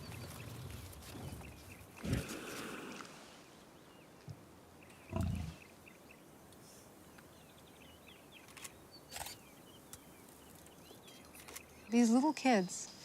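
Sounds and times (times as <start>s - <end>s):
birds chirping faintly: 0.0s - 13.0s
lion grunting: 5.1s - 5.7s.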